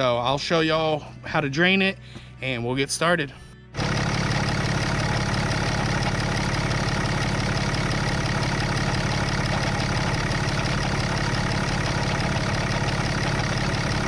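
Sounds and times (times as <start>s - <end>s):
diesel engine idling: 3.8s - 14.0s.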